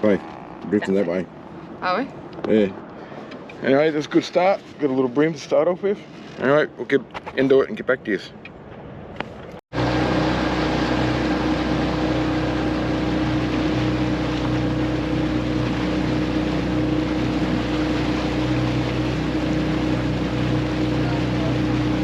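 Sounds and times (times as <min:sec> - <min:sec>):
water noise: 0:09.4 - 0:22.0
outboard motor running: 0:09.7 - 0:22.0.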